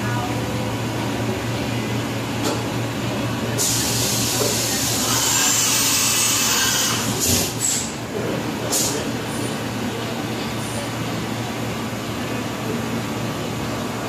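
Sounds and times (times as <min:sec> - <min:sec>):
machining center humming: 0:00.0 - 0:14.0
loud spraying hiss: 0:03.6 - 0:07.8.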